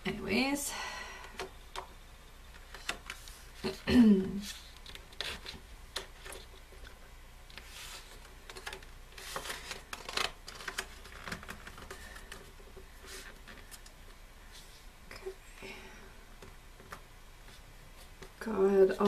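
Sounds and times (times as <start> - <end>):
paper pages rustling: 2.6 - 14.8.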